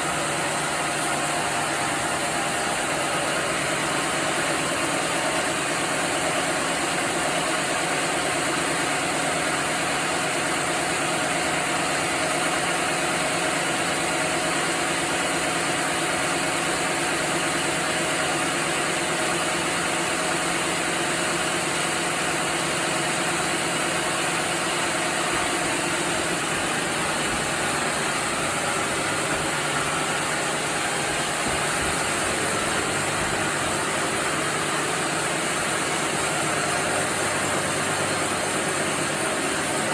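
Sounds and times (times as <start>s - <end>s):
sawmill machinery humming: 0.0s - 39.9s.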